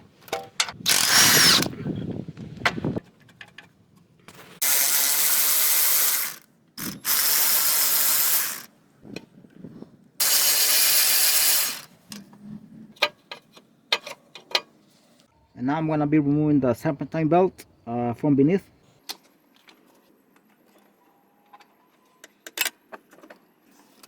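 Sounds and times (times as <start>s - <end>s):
power ratchet spinning bolt: 0.7s - 1.7s, 4.6s - 8.7s, 10.2s - 11.9s.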